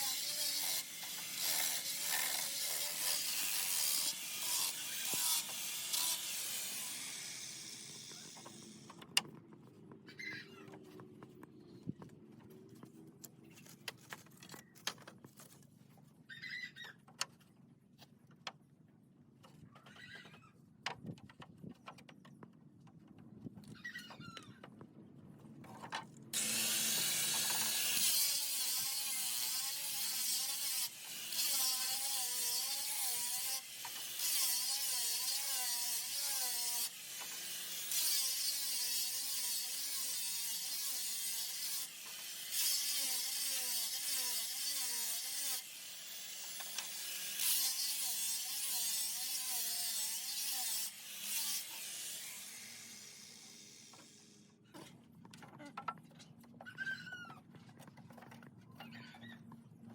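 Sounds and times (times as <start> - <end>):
power tool cutting wood: 0.0 - 9.0, 26.4 - 54.4.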